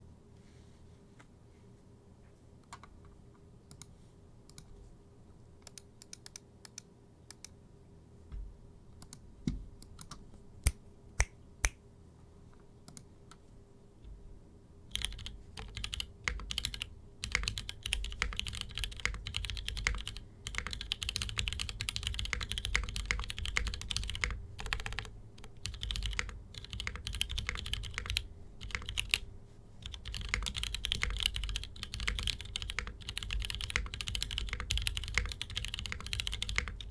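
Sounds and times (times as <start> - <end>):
mechanical keyboard typing: 14.9 - 29.2, 29.8 - 36.9.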